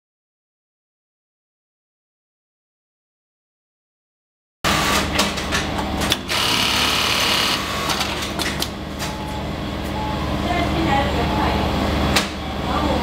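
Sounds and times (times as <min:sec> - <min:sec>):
motor humming: 0:06.2 - 0:08.2.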